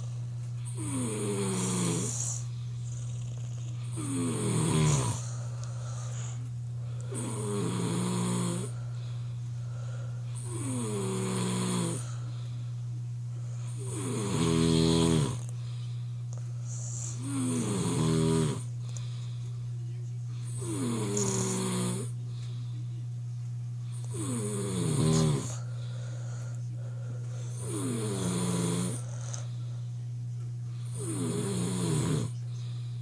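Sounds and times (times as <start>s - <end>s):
steady low hum: 0.0s - 33.0s
person snoring hard: 0.7s - 5.3s, 7.0s - 8.8s, 9.7s - 12.2s, 13.7s - 15.5s, 17.1s - 18.7s, 20.5s - 22.2s, 24.0s - 25.6s, 27.4s - 29.4s, 30.8s - 32.3s.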